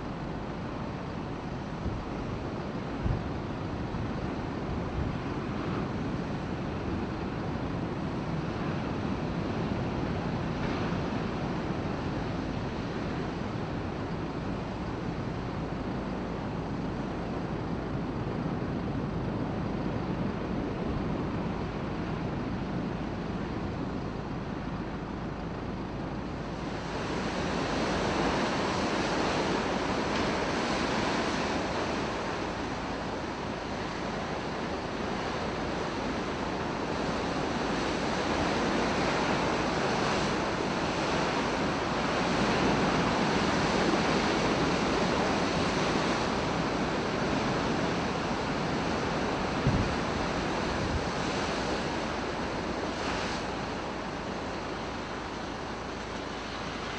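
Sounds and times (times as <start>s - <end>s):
waves surging and breaking: 0.0s - 56.9s
wind buffeting microphone: 38.8s - 56.4s.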